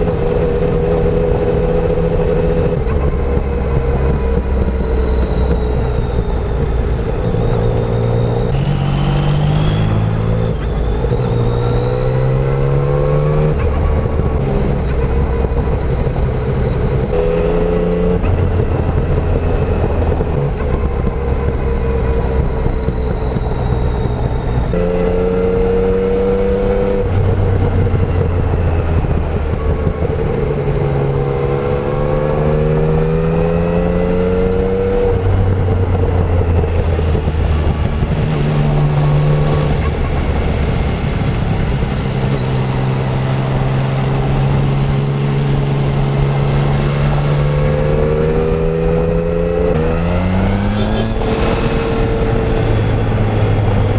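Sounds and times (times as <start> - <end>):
motorcycle engine revving: 0.0 - 53.9.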